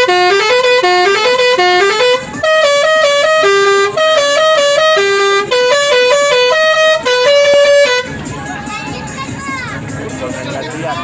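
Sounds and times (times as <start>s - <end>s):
bus horn playing a tune: 0.0s - 8.8s.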